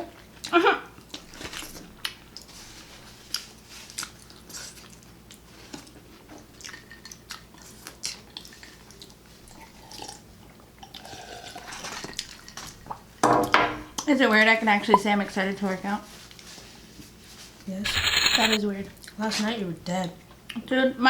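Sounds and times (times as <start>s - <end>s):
chewing and crunching food: 0.4s - 12.7s.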